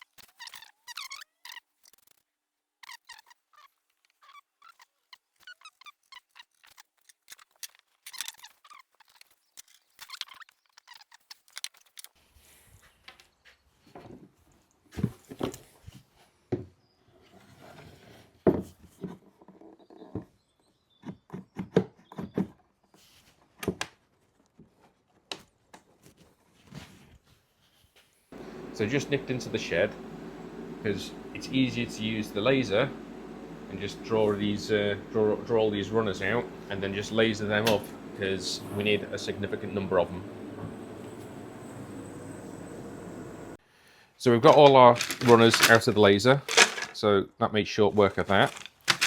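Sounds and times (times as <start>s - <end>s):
wooden pieces knocking: 44.5s - 47.0s, 48.2s - 49.0s.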